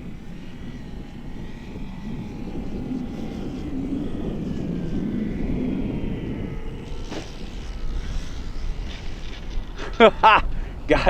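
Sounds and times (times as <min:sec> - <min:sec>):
electric motor propeller whine: 0:00.0 - 0:11.0
wind rumble on microphone: 0:00.0 - 0:11.0.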